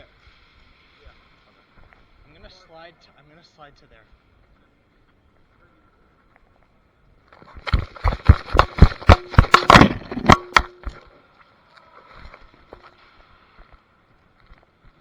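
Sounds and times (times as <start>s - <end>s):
running footsteps on rough ground: 7.4s - 11.0s.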